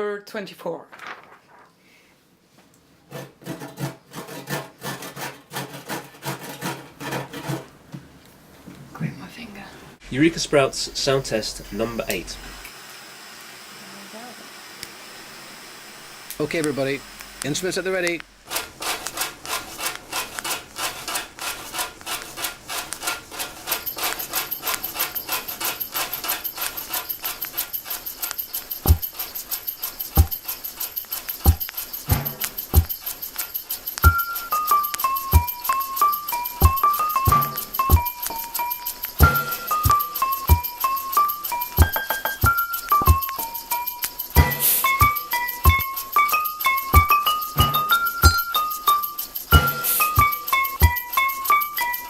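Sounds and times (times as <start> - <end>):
rhythmic buzzing rasping strokes: 10.0 - 12.7, 16.3 - 52.0
thin high whine: 10.0 - 18.8, 23.4 - 52.0.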